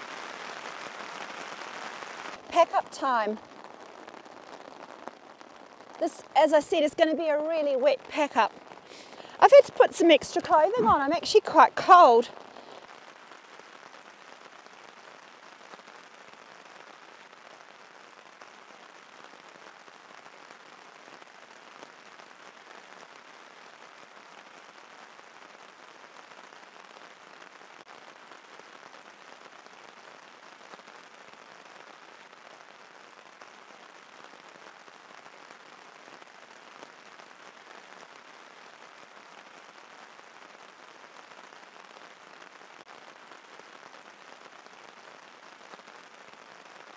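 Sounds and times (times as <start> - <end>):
steady rain falling: 0.0 - 46.9
faint raindrop taps: 2.3 - 14.2.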